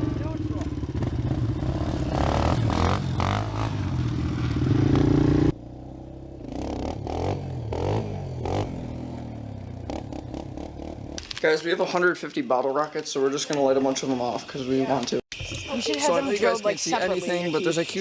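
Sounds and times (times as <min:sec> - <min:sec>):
engine revving: 0:00.0 - 0:11.2.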